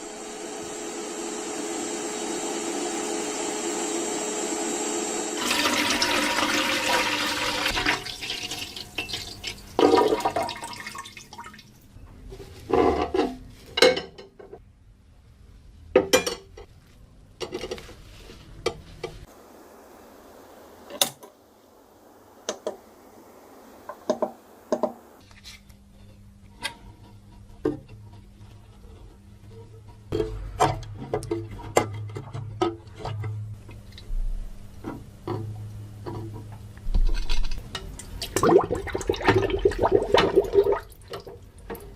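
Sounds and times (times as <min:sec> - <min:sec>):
water running: 0:05.4 - 0:11.9, 0:37.2 - 0:41.9.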